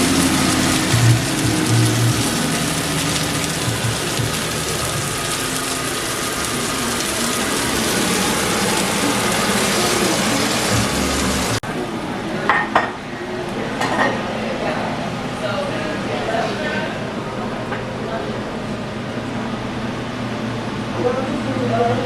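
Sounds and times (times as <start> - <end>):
food sizzling in pan: 0.0 - 11.6.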